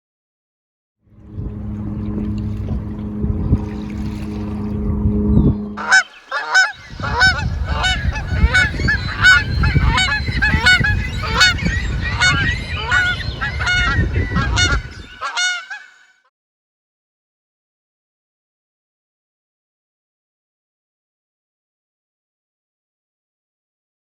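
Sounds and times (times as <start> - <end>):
steady low hum: 1.1 - 5.9
geese honking: 3.8 - 16.2.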